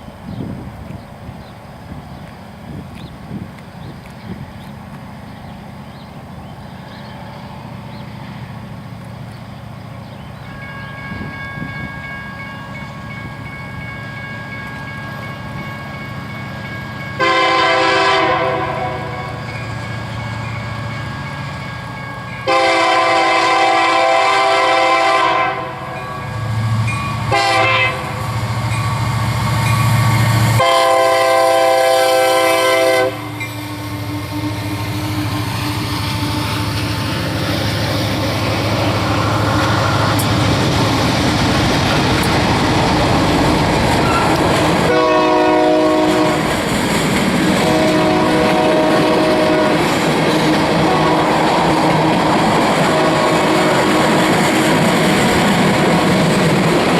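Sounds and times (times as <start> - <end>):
locomotive engines droning: 0.0 - 56.9
train cars rolling on rails: 0.0 - 56.9
train air horn blasts: 17.2 - 19.5, 22.4 - 26.1, 27.3 - 28.3, 30.6 - 36.8, 44.0 - 46.5, 47.6 - 52.0, 52.9 - 54.2.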